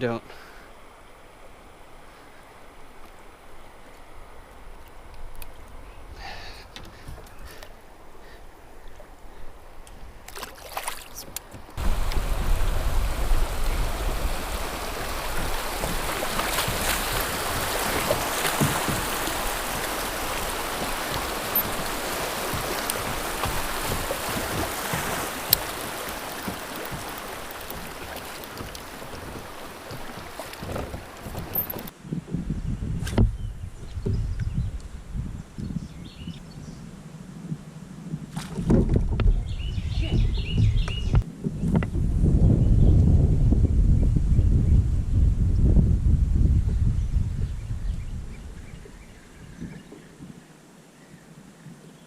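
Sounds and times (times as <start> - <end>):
rushing white water: 7.8 - 31.9.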